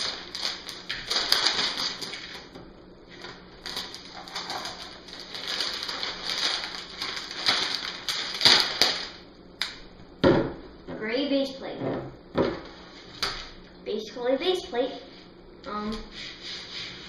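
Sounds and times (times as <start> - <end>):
sharp packaging crackle: 0.0 - 2.6, 3.2 - 9.8
packaging crinkling and rustling: 0.0 - 9.2.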